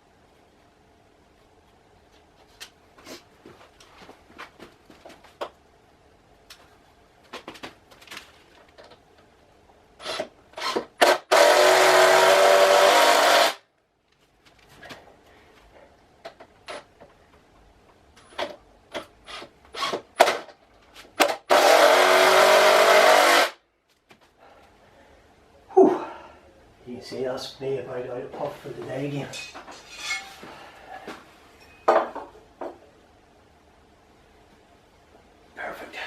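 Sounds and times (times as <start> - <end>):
cordless drill driving screws: 10.0 - 13.6, 19.3 - 20.4, 21.2 - 23.6.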